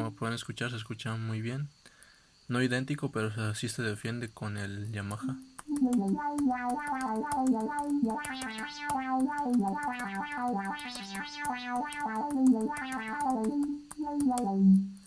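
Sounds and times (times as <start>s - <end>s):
synthesizer fast melody: 5.2s - 14.9s
steady ticking beat: 5.2s - 15.0s.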